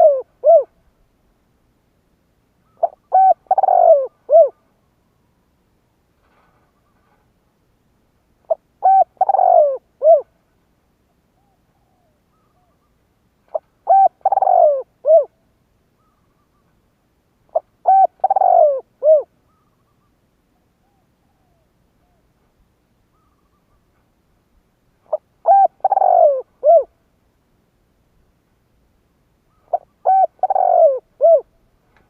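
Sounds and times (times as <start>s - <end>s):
dove cooing: 0.0s - 0.8s, 2.7s - 4.7s, 8.5s - 10.4s, 13.5s - 15.4s, 17.5s - 20.0s, 25.0s - 27.0s, 29.5s - 31.6s.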